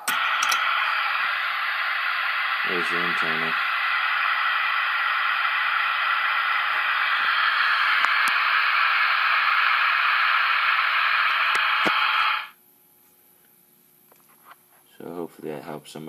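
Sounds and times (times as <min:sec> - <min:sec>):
radio static hissing: 0:00.0 - 0:12.6.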